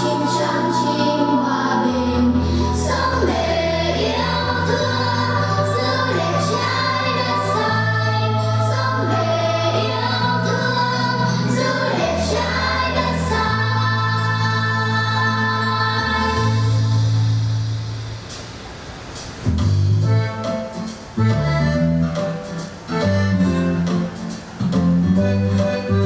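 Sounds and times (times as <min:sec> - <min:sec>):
choir singing: 0:00.0 - 0:17.1
instrumental accompaniment with bass: 0:00.0 - 0:18.1, 0:19.5 - 0:26.0.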